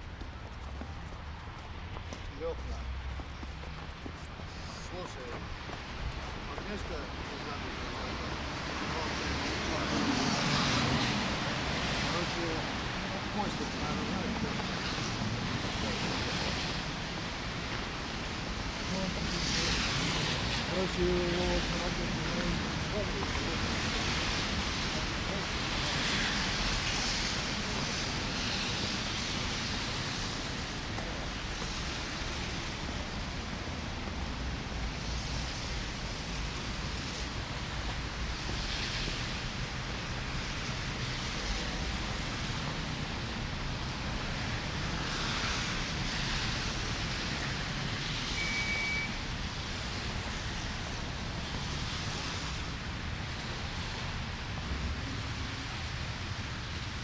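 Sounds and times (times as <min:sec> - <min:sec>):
continuous blizzard hiss: 0:00.0 - 0:57.0
short high beep: 0:48.4 - 0:49.2.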